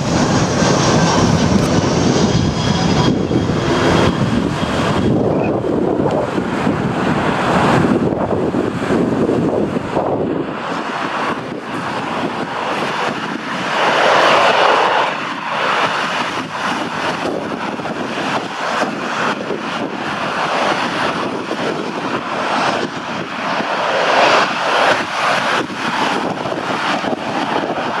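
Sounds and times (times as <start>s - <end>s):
jet airliner roar: 0.0s - 28.0s
wind buffeting microphone: 0.0s - 28.0s.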